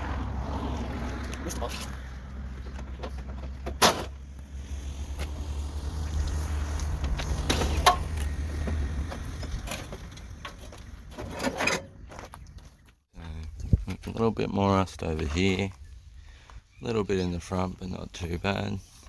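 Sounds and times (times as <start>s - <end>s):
steady low rumble: 0.0s - 11.2s.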